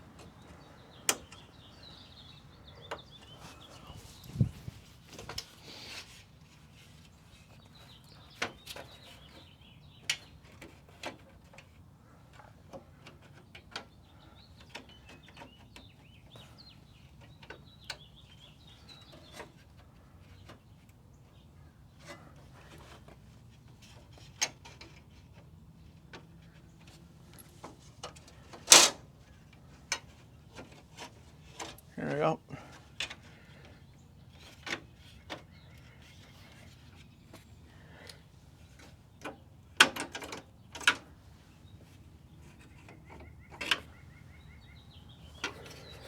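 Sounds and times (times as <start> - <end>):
plastic clips clicking: 28.7 - 29.0.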